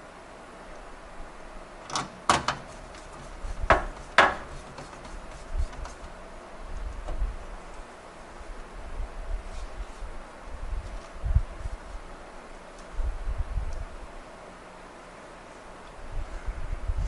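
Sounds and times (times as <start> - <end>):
hardware clicks and knocks: 1.9 - 5.2.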